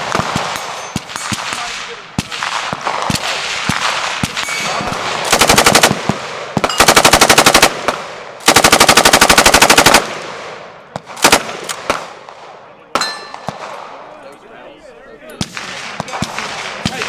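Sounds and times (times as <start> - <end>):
automatic gunfire bursts: 0.0 - 10.2, 11.1 - 12.1
range noise and echo: 0.0 - 17.0.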